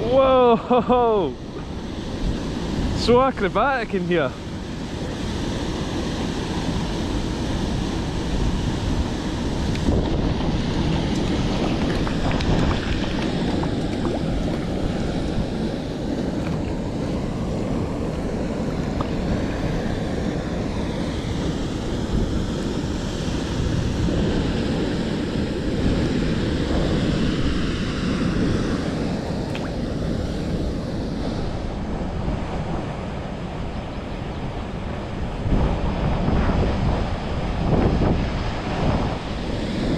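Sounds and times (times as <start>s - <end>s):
waterfall rushing into pool: 0.0s - 30.0s
wind buffeting microphone: 0.0s - 39.9s.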